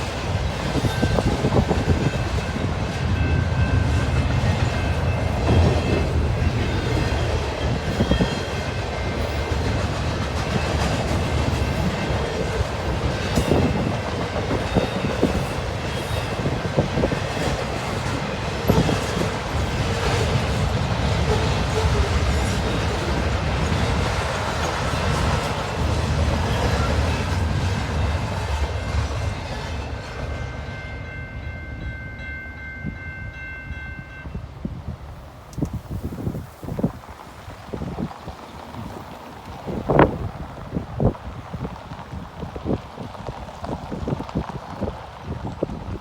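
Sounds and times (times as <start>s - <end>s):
wheels clacking over rail joints: 0.0s - 30.7s
freight train rumbling past: 0.0s - 46.0s.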